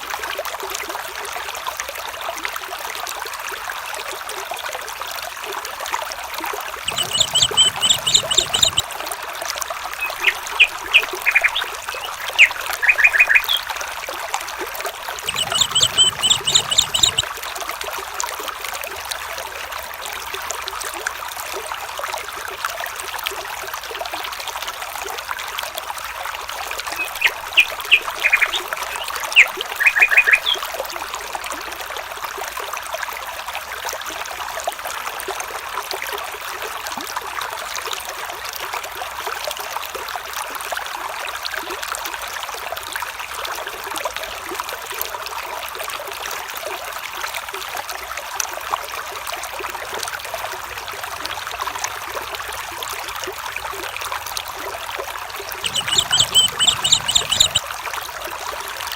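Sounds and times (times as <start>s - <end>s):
stream running water: 0.0s - 58.9s
animal chattering trill: 6.9s - 8.8s, 10.0s - 13.6s, 15.2s - 17.3s, 27.0s - 30.6s, 55.6s - 57.7s
sharp chirping notes: 6.9s - 8.8s, 10.0s - 13.6s, 15.2s - 17.2s, 27.0s - 30.6s, 55.6s - 57.6s.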